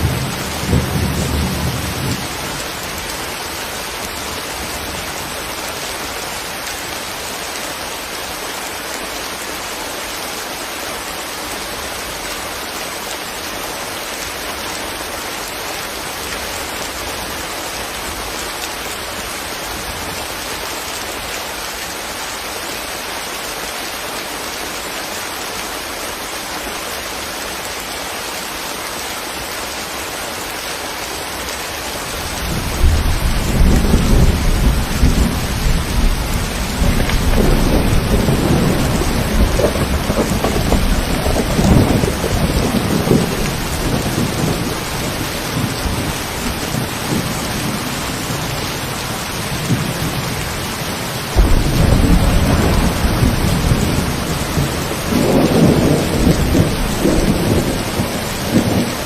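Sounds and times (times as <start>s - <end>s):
low rumble of thunder: 0.0s - 3.1s, 32.3s - 48.4s, 51.4s - 59.0s
steady rain falling: 0.0s - 59.0s.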